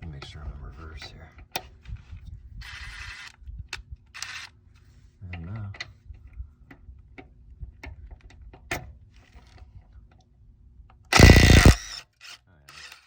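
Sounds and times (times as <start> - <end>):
impact wrench hammering: 11.2 - 11.8.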